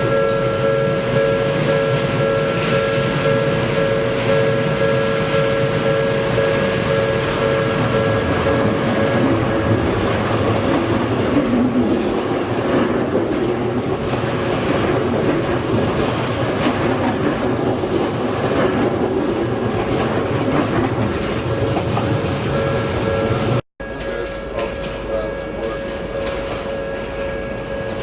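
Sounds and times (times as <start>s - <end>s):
steel wheels on rails: 0.0s - 28.0s
high wheel squeals: 15.9s - 16.7s.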